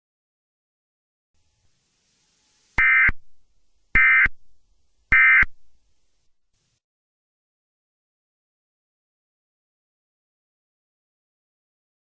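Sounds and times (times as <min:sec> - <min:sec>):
digital data tone bursts: 0:02.8 - 0:03.2, 0:04.0 - 0:04.4, 0:05.1 - 0:05.5.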